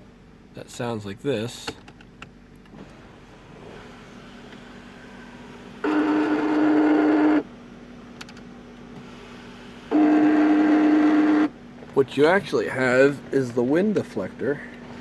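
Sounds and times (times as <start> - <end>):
sunroof motor buzzing grind: 4.9 - 7.5, 9.4 - 11.5.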